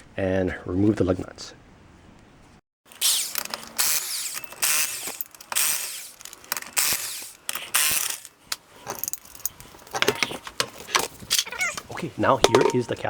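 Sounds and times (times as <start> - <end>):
ratchet wrench clicking: 2.9 - 8.3.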